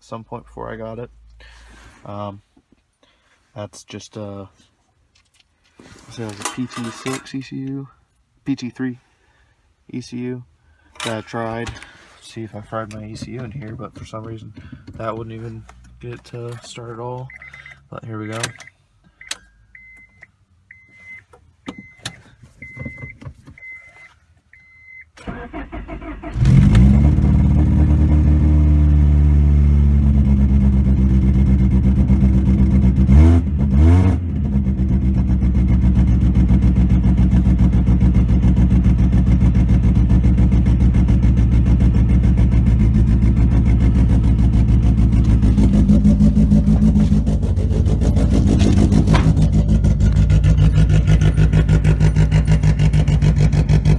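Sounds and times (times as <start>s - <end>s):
car warning chime beeping: 17.2s - 25.2s
car engine cranking and starting: 25.1s - 53.9s
car engine idling and revving: 25.9s - 53.9s.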